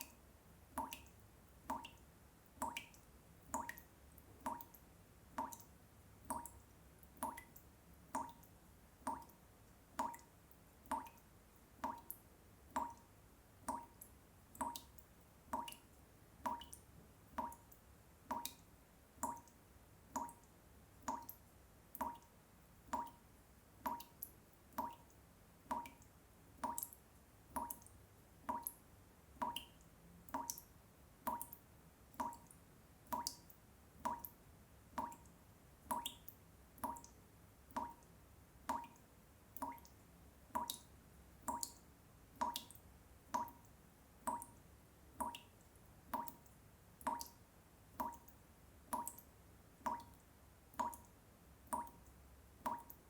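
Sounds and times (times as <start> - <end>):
water dripping from tap: 0.0 - 53.0.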